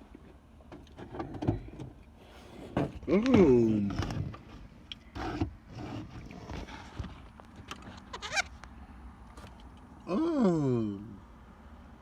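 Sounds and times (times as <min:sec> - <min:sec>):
person humming mm: 0:10.1 - 0:11.2.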